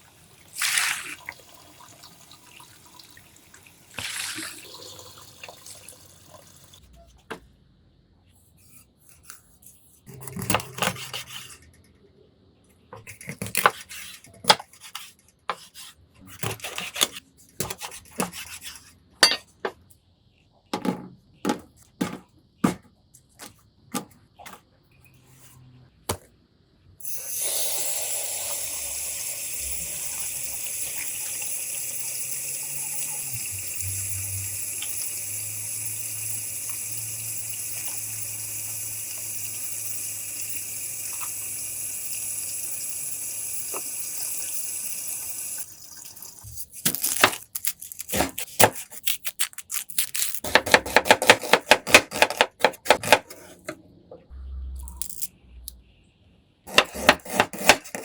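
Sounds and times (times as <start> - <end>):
tap water running into sink: 0.5 - 6.8, 27.3 - 46.7.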